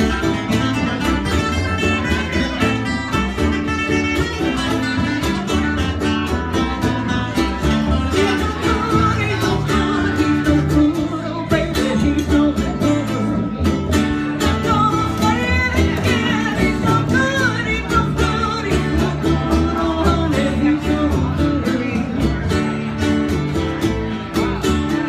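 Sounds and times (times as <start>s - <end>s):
country music with guitars: 0.0s - 25.0s
person singing: 7.3s - 23.2s.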